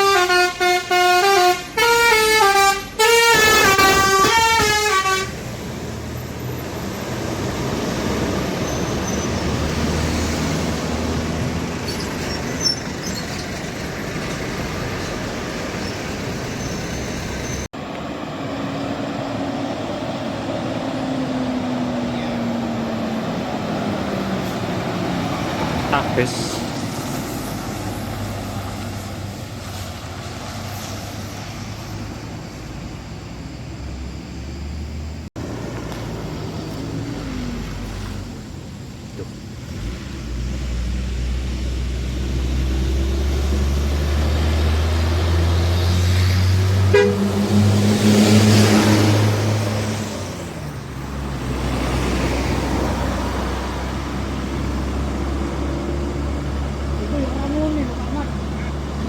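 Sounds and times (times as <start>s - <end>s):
vehicle horn: 0.0s - 5.4s, 46.8s - 47.7s
heavy vehicle engines droning: 0.0s - 59.0s.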